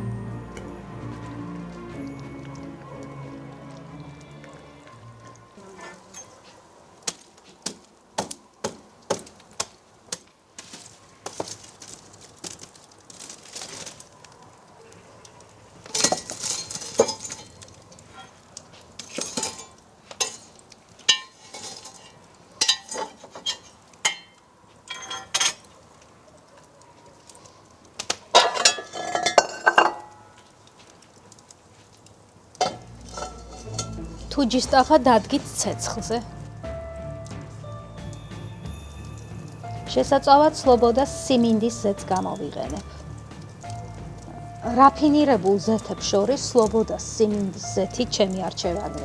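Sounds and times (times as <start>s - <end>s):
kitchenware clinks and knocks: 24.9s - 25.6s, 28.4s - 30.3s, 32.6s - 35.0s
rattling scrapes: 32.6s - 34.5s.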